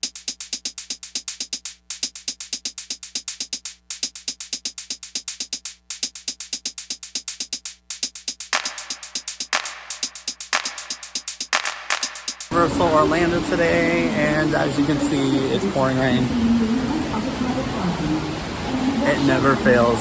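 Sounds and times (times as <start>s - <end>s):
electronic music with drum-machine beat: 0.0s - 12.5s.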